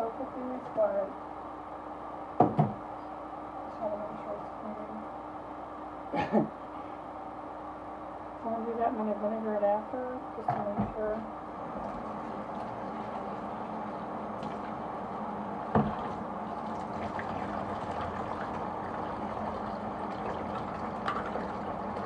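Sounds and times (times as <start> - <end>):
tap water running: 11.6 - 22.0.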